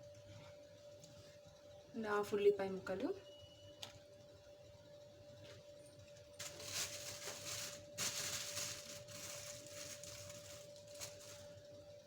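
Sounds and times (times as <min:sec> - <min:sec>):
faint steady hum: 0:00.0 - 0:12.0
rustling and scraping in a pot: 0:05.4 - 0:11.6.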